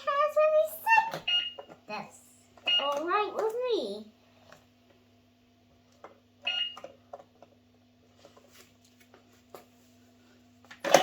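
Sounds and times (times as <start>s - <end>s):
low electrical hum: 0.0s - 11.0s
toy register electronic beep: 1.1s - 1.7s, 2.6s - 3.1s, 6.4s - 7.0s.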